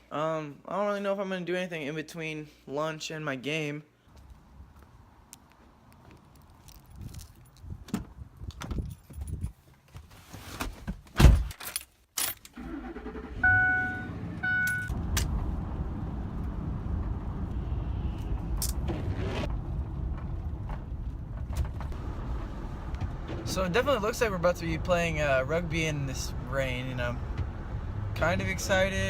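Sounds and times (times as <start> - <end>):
keys jangling: 6.4 - 7.7
car engine running: 13.0 - 29.0
short electronic beeps: 13.4 - 15.0.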